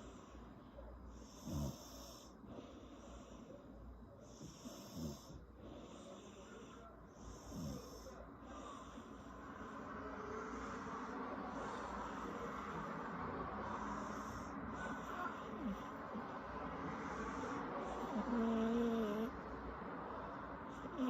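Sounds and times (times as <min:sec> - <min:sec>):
woman snoring: 0:18.0 - 0:19.3.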